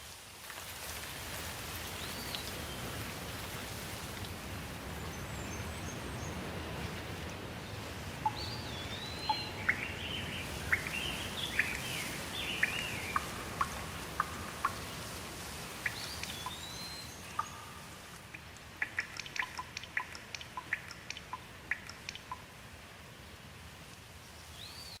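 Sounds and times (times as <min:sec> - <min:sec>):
sharp water drips: 0:00.0 - 0:24.2
rain falling: 0:00.0 - 0:25.0
birds chirping: 0:04.8 - 0:22.5.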